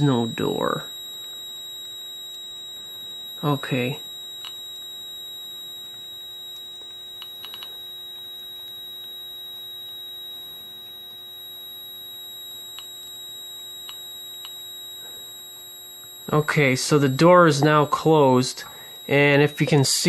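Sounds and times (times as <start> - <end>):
electrical hum: 0.0 - 20.0
high steady whine: 0.0 - 20.0
faint clicks: 5.8 - 8.2.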